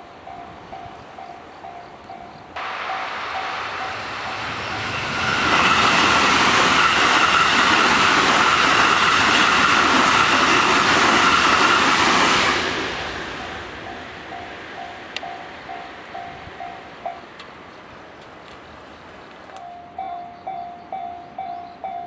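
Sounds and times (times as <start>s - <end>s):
level crossing warning bell: 0.0s - 5.1s, 13.8s - 17.3s, 19.6s - 22.0s
electric train passing with whine: 0.0s - 18.0s, 18.8s - 22.0s.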